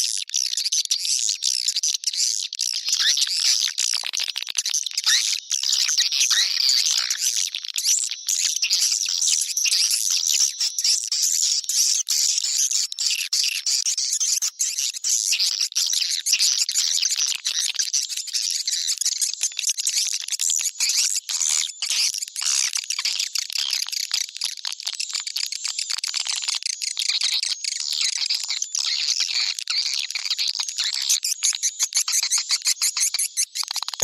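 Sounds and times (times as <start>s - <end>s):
swiftlets chirping and twittering: 0.0s - 19.4s.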